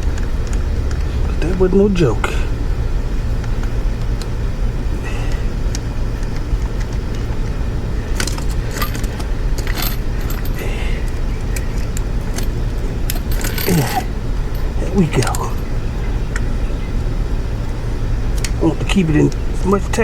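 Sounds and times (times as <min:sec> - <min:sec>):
low hum: 0:00.0 - 0:20.0
metal tools and parts clinking: 0:06.3 - 0:15.6.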